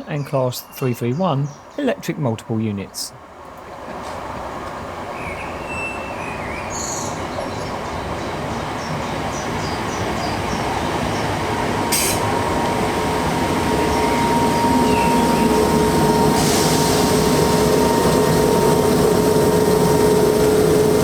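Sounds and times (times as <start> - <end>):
train whine: 3.2 - 21.0
electric train running: 4.2 - 21.0.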